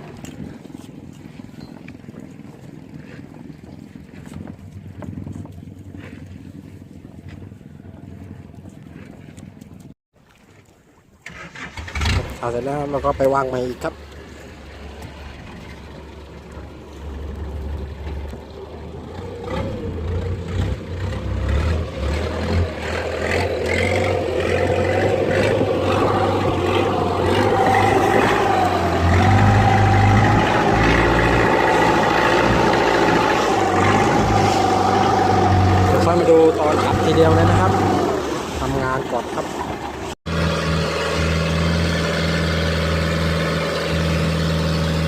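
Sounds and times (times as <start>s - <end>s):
boat engine revving up: 11.2s - 45.0s.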